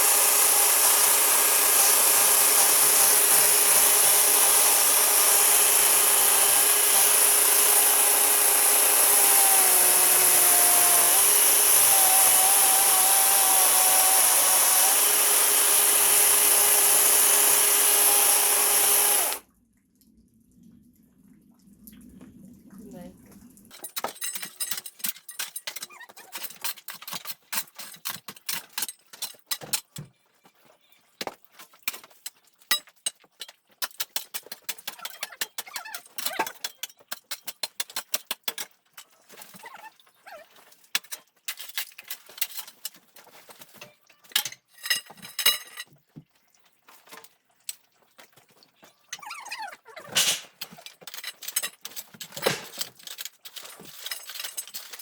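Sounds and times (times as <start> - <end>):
hard objects clattering: 23.7 - 30.1, 50.1 - 55.0.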